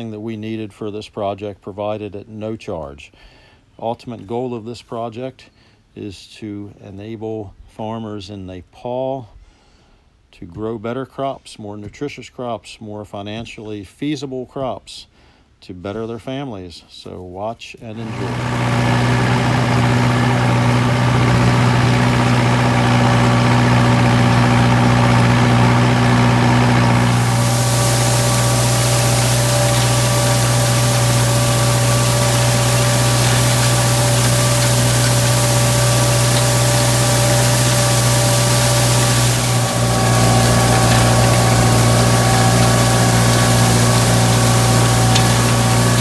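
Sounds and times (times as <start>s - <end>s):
tractor engine running: 18.0s - 46.0s.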